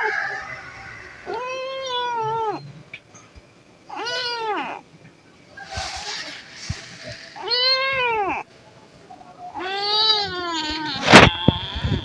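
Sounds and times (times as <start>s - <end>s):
kitten meowing: 1.2s - 2.6s.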